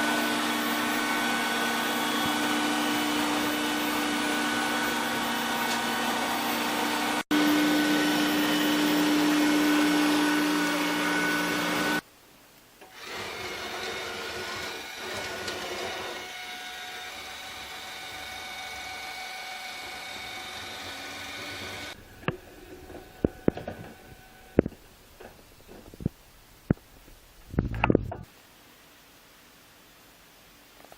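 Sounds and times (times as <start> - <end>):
robot vacuum cleaner humming: 0.0 - 12.0, 12.9 - 24.7.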